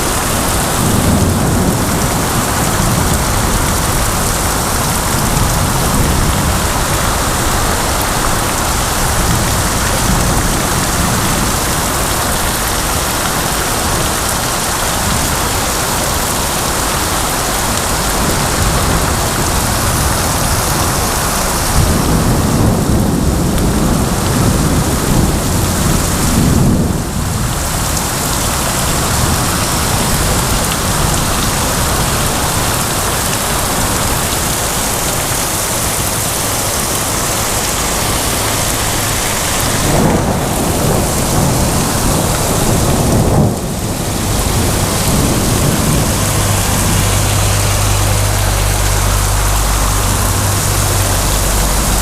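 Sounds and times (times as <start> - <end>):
heavy rain pouring: 0.0 - 52.0
thunder rumbling: 0.0 - 52.0.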